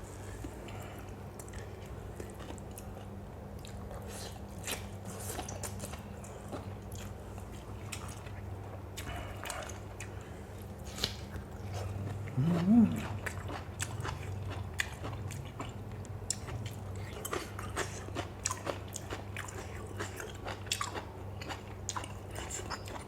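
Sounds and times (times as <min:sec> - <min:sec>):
steady low hum: 0:00.0 - 0:23.0
person chewing crunchy food: 0:00.1 - 0:23.0
wet crunchy clicks and smacks: 0:10.9 - 0:11.5.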